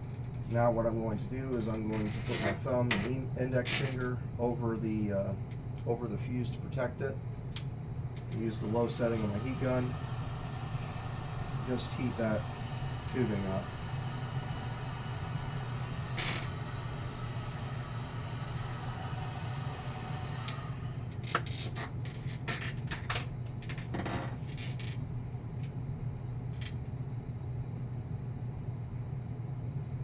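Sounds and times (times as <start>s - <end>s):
heat gun blowing: 7.8s - 21.6s.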